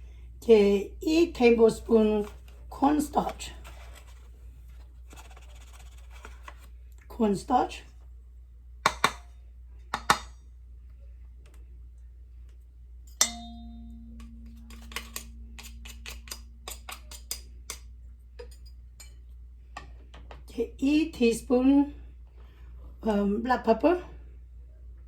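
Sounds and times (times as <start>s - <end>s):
bowl ringing: 13.1s - 16.7s
spoon clicking against bowl: 14.2s - 19.2s.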